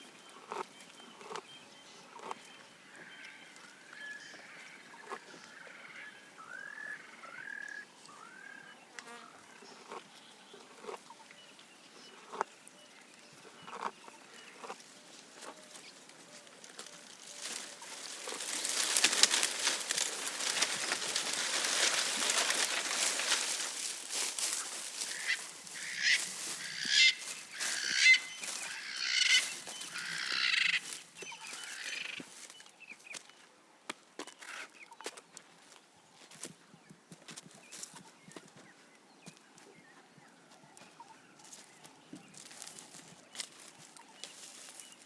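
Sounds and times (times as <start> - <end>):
leafy branches rustling: 15.1 - 32.5, 42.4 - 45.0.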